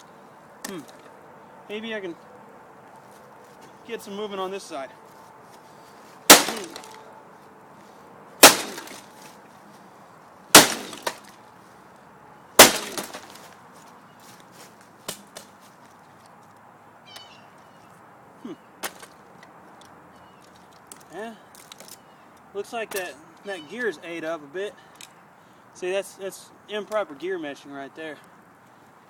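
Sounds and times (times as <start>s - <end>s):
hard blows on printer parts: 6.3s - 7.0s, 8.4s - 9.1s, 10.5s - 11.3s, 12.6s - 13.4s.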